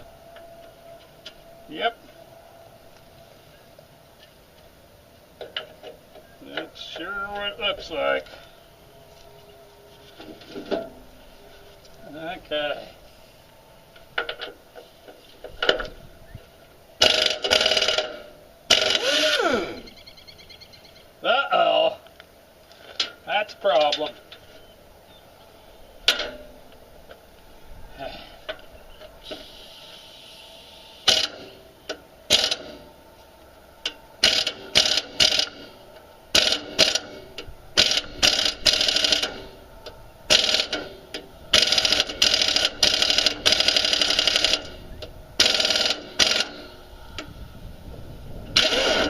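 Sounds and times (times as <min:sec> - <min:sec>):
pneumatic wrench bursts: 0:17.0 - 0:19.9, 0:29.2 - 0:31.6, 0:32.3 - 0:32.9, 0:34.2 - 0:39.6, 0:40.3 - 0:46.8, 0:48.6 - 0:49.0.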